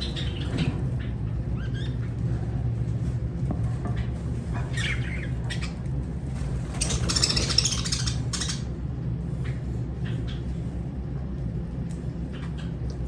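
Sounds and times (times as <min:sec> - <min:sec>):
steady low hum: 0:00.0 - 0:13.0
bird chirping: 0:06.7 - 0:08.7
harsh squawking chatter: 0:06.7 - 0:08.7.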